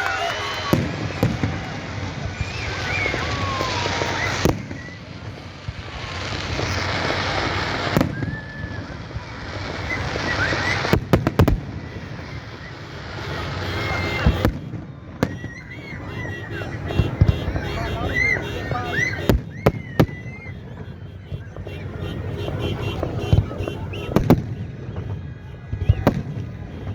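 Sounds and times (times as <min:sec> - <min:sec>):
whistles: 0:00.0 - 0:05.4, 0:07.9 - 0:22.0
crowd voices: 0:00.0 - 0:26.9
fireworks bangs and cracks: 0:00.0 - 0:26.9
rushing hiss of fireworks: 0:00.0 - 0:26.9.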